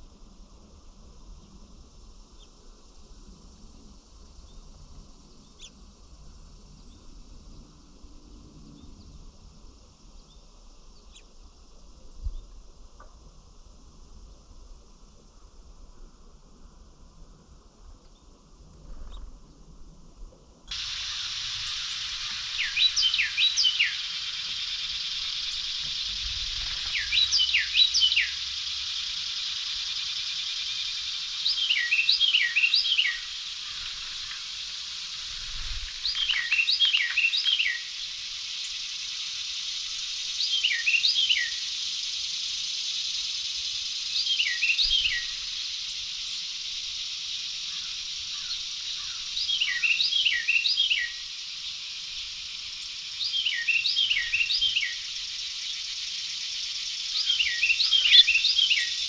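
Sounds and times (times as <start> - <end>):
steady high hiss: 0.0 - 59.0
songbird whistling: 20.7 - 39.4, 40.0 - 41.7, 44.1 - 45.7, 47.7 - 51.3, 53.2 - 59.0.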